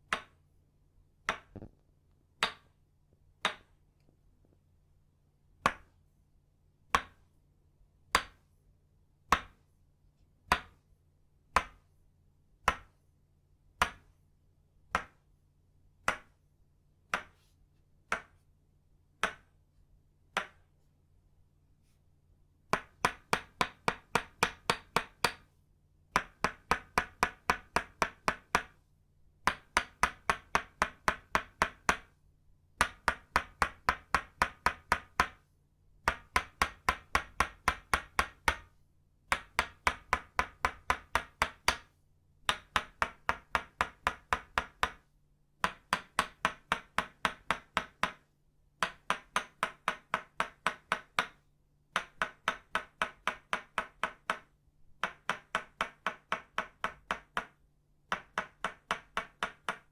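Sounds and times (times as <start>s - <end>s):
wooden mallet tapping wooden stake: 1.2s - 1.7s.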